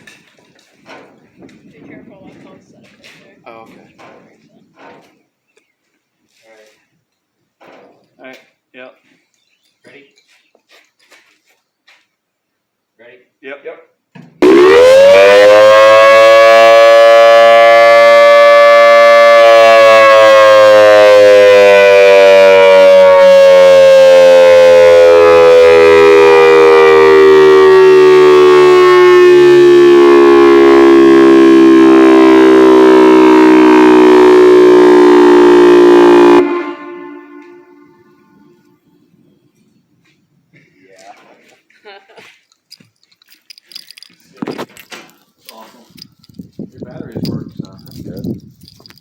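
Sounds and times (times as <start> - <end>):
warning siren: 14.4 - 39.0.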